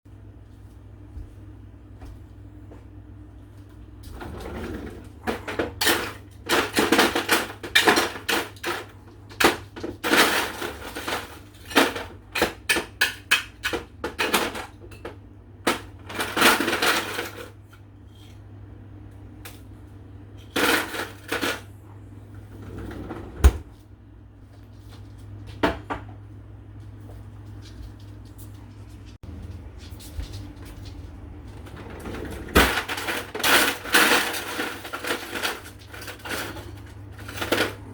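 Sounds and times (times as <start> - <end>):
ice cubes clattering in a bin: 4.9 - 17.6, 20.4 - 21.7, 31.6 - 37.9.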